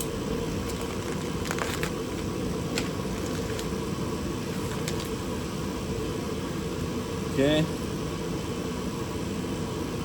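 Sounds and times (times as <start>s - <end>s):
heater blower humming: 0.0s - 10.0s.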